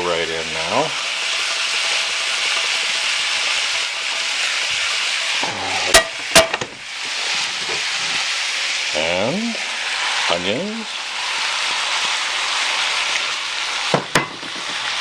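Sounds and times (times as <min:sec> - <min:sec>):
meat and mushrooms sizzling in pan: 0:00.0 - 0:15.0
sharp knocks against pan: 0:06.0 - 0:06.8.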